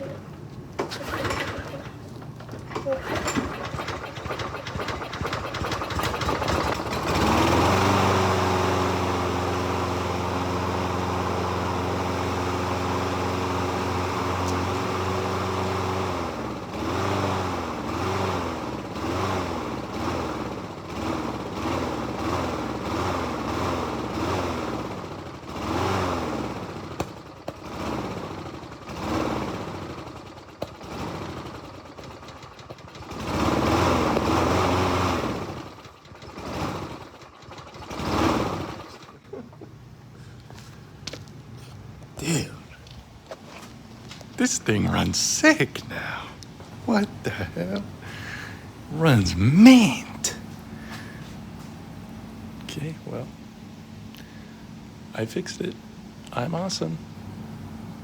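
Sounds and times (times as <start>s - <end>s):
lawn mower engine running: 0.2s - 55.2s.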